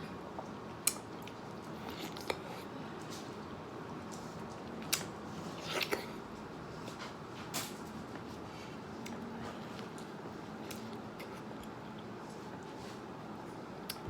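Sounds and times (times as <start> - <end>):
low room noise: 0.0 - 14.0
person chewing: 0.8 - 2.7.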